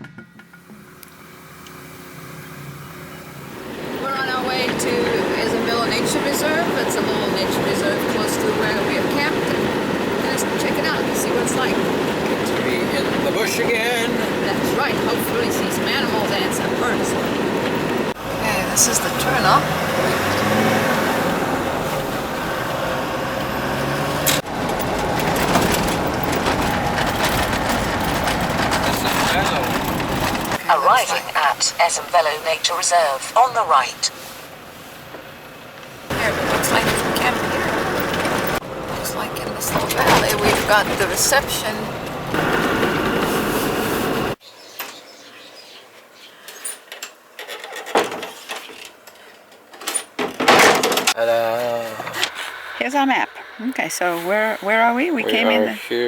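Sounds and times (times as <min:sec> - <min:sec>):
car engine driving: 0:00.0 - 0:44.4, 0:50.4 - 0:56.0.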